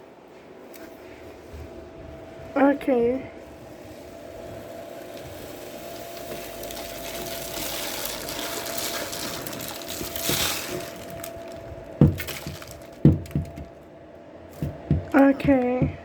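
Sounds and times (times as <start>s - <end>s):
bird cage rustling and scraping: 3.6s - 13.6s
sharp knocks: 12.0s - 13.8s, 14.5s - 16.0s.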